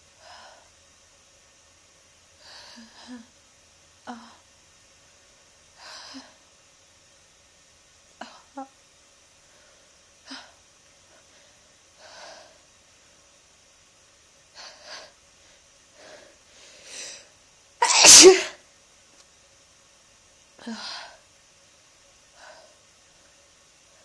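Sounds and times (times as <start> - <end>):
person breathing: 16.0 - 18.5
person sneezing: 17.8 - 18.6.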